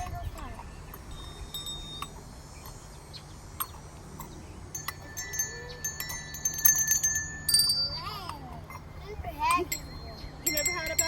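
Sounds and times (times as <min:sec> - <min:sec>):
small jingle bells shaken: 0:04.7 - 0:11.0.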